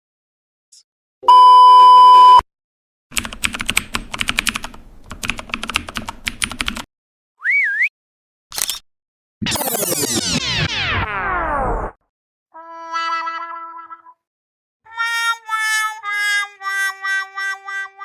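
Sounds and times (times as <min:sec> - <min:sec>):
high censor beep: 0:01.2 - 0:02.4
computer keyboard typing: 0:03.1 - 0:06.9.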